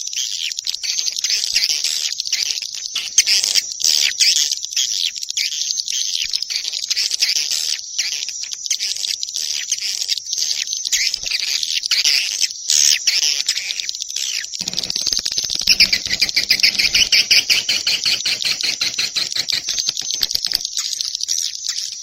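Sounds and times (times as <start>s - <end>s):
swiftlets twittering: 14.6s - 21.3s.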